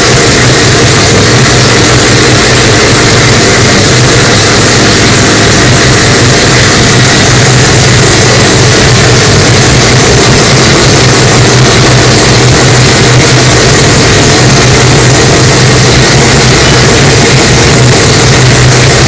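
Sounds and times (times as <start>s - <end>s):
distorted racing engine running: 0.0s - 19.0s.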